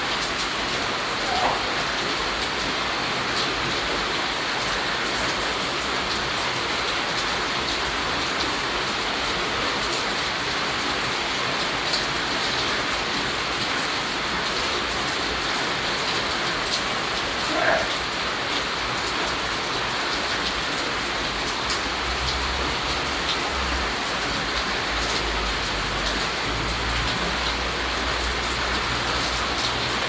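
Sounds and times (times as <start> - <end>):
steady rainfall: 0.0 - 30.0.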